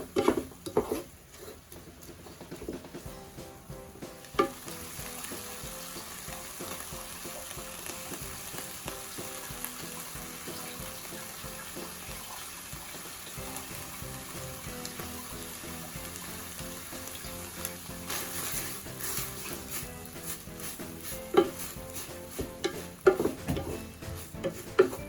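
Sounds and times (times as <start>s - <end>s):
chicken sizzling in oil: 3.1s - 25.0s
utensil knocking against pan: 4.0s - 9.8s, 18.1s - 25.0s.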